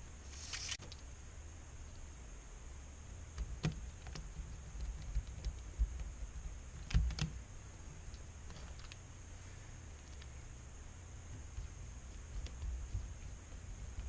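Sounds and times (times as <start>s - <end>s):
faint steady hum: 0.0s - 14.0s
small parts clicking and tapping: 3.3s - 7.4s, 8.0s - 9.1s, 9.9s - 10.4s, 11.3s - 14.0s.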